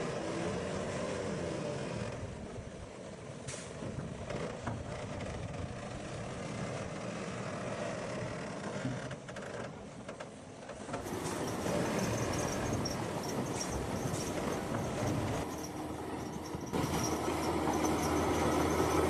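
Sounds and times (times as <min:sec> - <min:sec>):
heavy diesel machinery running: 0:11.0 - 0:19.0
metallic squealing of crawler tracks: 0:11.0 - 0:19.0.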